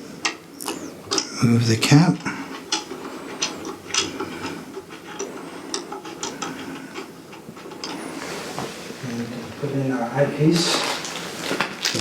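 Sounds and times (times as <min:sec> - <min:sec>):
small parts clicking and tapping: 0:02.2 - 0:08.0.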